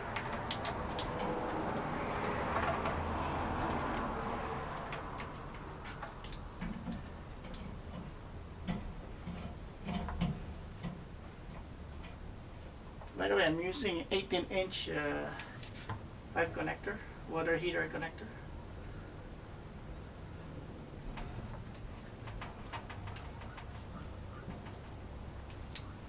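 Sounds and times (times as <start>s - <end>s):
small metallic clicks and ticks: 0.0s - 12.3s, 20.8s - 26.0s.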